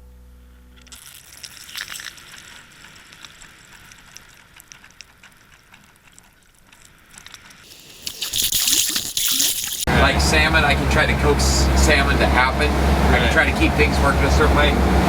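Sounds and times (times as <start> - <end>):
water rushing along a boat: 7.6 - 15.0.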